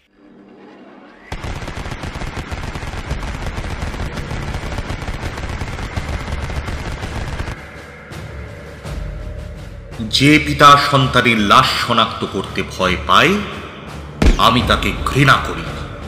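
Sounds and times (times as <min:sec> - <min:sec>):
automatic gunfire: 0:01.3 - 0:07.6.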